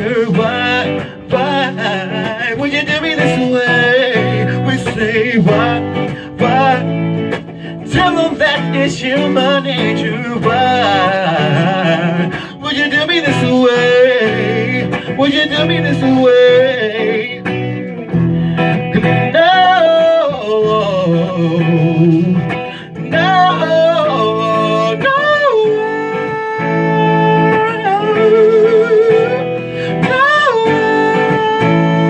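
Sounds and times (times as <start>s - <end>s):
acoustic guitar: 0.0s - 32.0s
person singing wordless notes: 7.8s - 17.5s, 19.0s - 32.0s.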